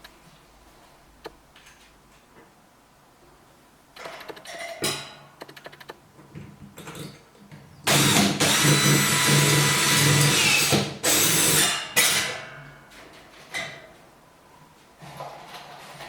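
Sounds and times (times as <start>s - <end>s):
power drill drilling: 7.9s - 11.7s.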